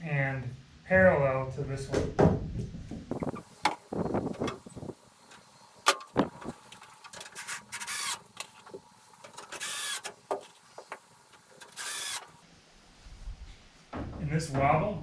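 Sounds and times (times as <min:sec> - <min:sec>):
clicks and knocks of tape and lumber: 0:03.1 - 0:12.4
tape measure blade zipping: 0:07.2 - 0:08.6, 0:09.5 - 0:11.0, 0:11.6 - 0:12.4.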